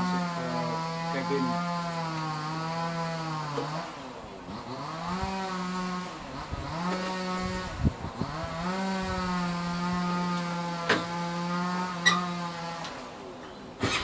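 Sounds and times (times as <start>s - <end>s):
machine engine revving: 0.0s - 13.1s.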